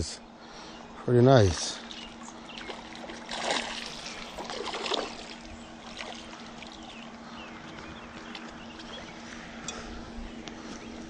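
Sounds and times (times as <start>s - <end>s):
faint steady hum: 0.0s - 11.0s
water dripping and lapping: 1.5s - 9.2s
water splashing: 1.7s - 6.9s.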